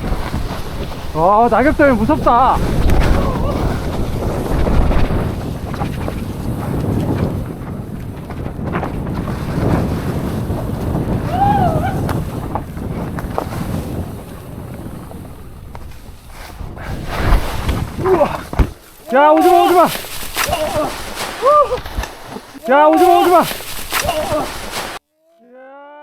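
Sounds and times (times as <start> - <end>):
wind buffeting microphone: 0.0 - 25.0
bike knocks and rattles: 2.7 - 11.2, 12.0 - 16.4, 17.2 - 25.0.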